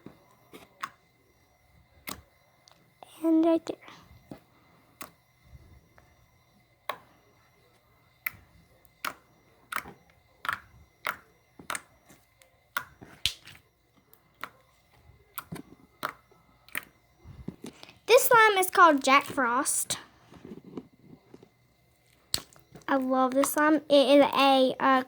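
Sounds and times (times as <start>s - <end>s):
slime clicks and pops: 22.3s - 22.6s.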